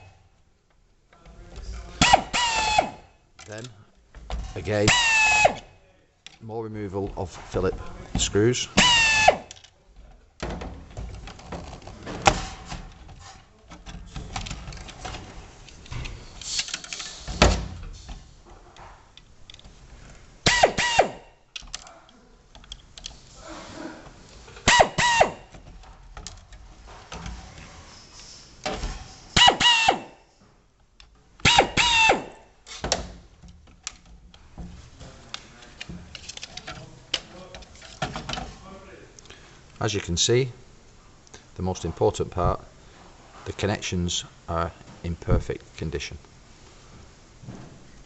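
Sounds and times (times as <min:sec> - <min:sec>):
short pitched squeaks: 0:24.7 - 0:25.5, 0:29.1 - 0:30.2.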